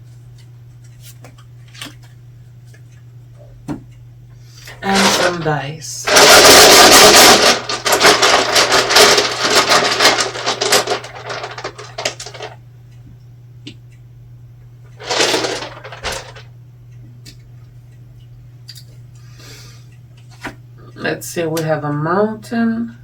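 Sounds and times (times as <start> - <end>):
steady low hum: 0.0 - 23.0
dice clattering: 4.9 - 12.6, 15.0 - 16.4
dice rattling in hands: 6.1 - 12.5, 15.0 - 16.4.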